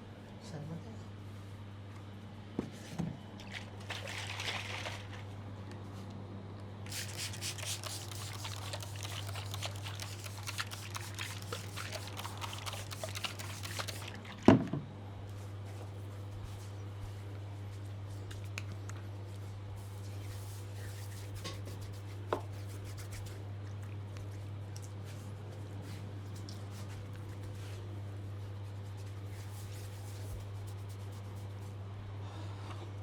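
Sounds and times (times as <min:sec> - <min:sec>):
wet squelching massage strokes: 0:06.9 - 0:14.4, 0:28.4 - 0:31.8.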